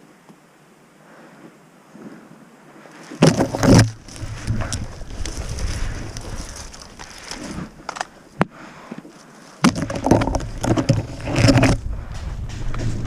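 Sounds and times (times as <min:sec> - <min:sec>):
rustling and knocking of gear: 0:02.9 - 0:13.0
low rumble: 0:10.4 - 0:13.0.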